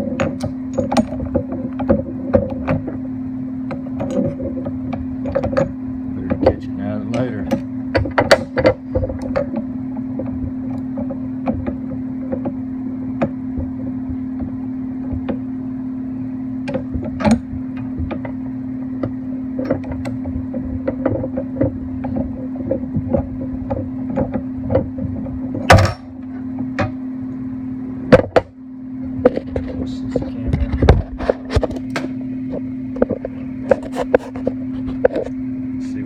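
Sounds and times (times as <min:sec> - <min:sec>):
steady hum: 0:00.0 - 0:36.0
loud clunk: 0:24.1 - 0:26.2.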